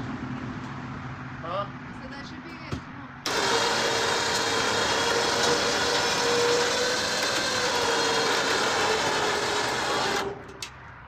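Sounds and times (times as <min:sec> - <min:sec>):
electric winch motor running: 0:03.2 - 0:10.8.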